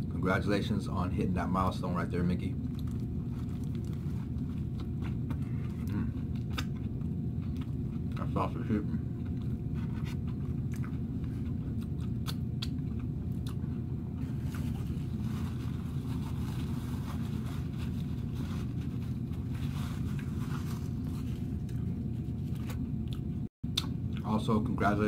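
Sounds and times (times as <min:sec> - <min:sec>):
faint steady hum: 0:00.0 - 0:25.0
low mechanical rumble: 0:00.0 - 0:25.0
crunching and chewing: 0:02.6 - 0:24.3.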